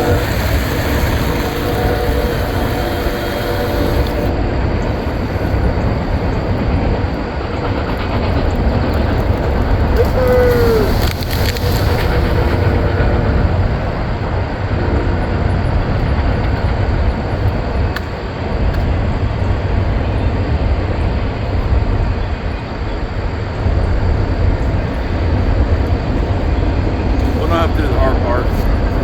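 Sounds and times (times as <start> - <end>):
electric chainsaw cutting wood: 0.0 - 4.3.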